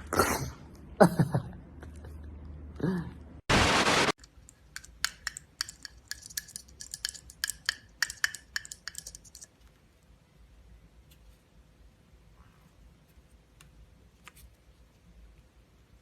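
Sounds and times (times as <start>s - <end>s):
short loud hiss: 3.5s - 4.2s.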